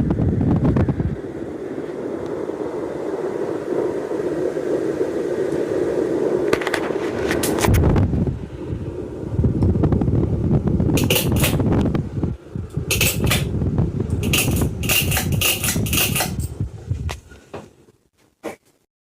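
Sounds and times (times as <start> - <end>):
ceiling fan rumble: 0.0 - 18.3
sharp clicks and rattles: 11.0 - 11.9, 12.7 - 13.5, 14.1 - 16.6.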